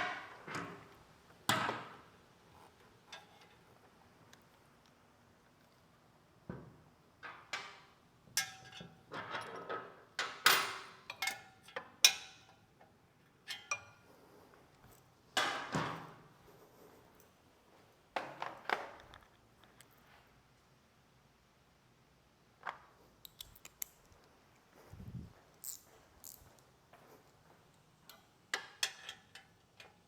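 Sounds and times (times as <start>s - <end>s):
metal tools clinking and knocking: 8.4s - 12.6s, 13.4s - 14.1s, 28.1s - 30.0s.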